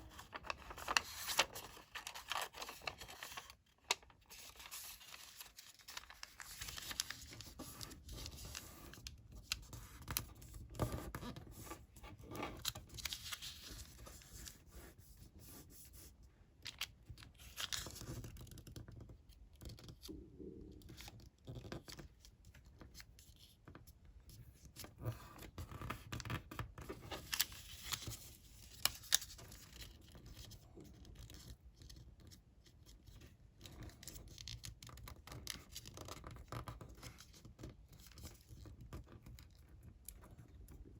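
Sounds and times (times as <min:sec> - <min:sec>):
paper rustling and folding: 0:00.0 - 0:20.2, 0:20.8 - 0:40.9.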